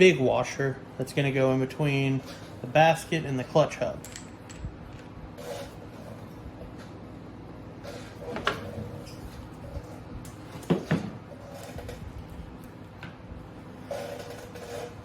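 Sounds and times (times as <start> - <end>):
metal clutch parts handled: 4.0 - 5.1.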